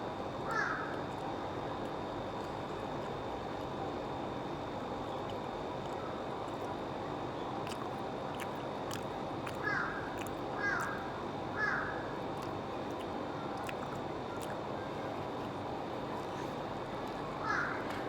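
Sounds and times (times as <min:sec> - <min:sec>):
steady background hum: 0:00.0 - 0:18.0
crow cawing: 0:00.4 - 0:01.0, 0:09.6 - 0:12.1, 0:17.4 - 0:17.9.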